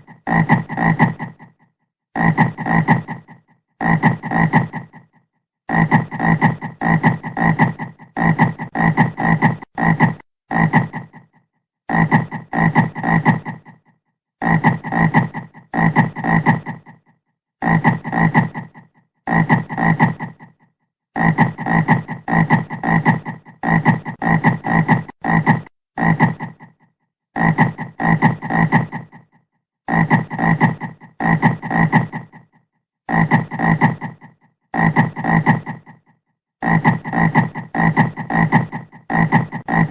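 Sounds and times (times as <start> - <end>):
frog croaking: 0.0 - 1.6, 2.2 - 17.0, 33.1 - 39.9.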